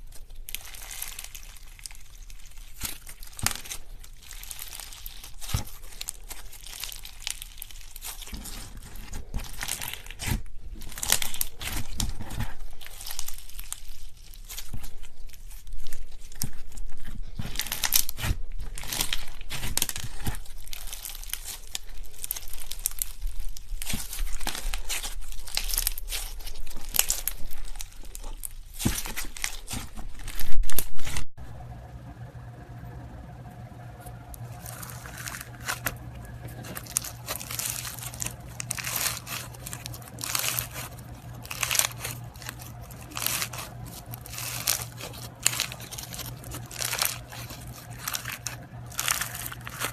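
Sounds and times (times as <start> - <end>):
slime crackling and crinkling: 0.0 - 31.3, 33.8 - 49.9
steady low hum: 0.0 - 49.9.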